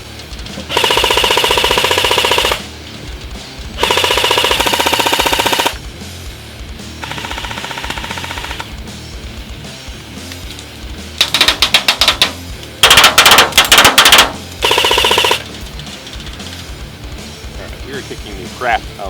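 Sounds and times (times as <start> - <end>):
airsoft gun full-auto bursts: 0.7 - 2.7, 3.8 - 5.8, 7.0 - 8.8, 11.2 - 15.4.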